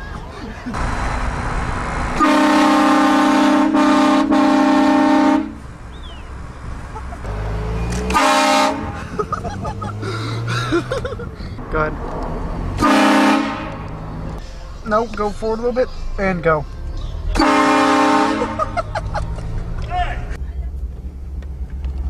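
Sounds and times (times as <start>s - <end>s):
train horn blasts: 2.2s - 5.6s, 8.1s - 9.0s, 12.8s - 13.9s, 17.4s - 18.6s.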